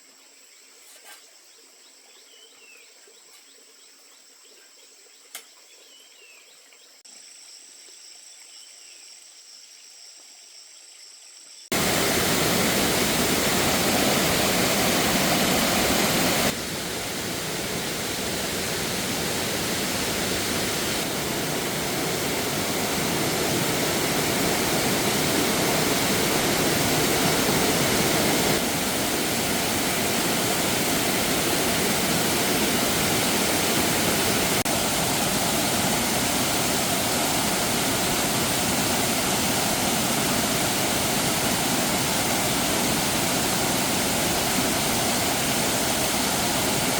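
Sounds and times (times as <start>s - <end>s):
rushing water: 11.7s - 46.9s.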